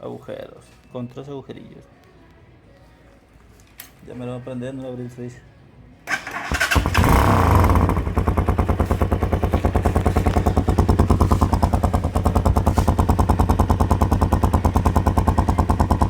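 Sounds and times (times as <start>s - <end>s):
motorcycle engine idling: 6.1s - 16.0s.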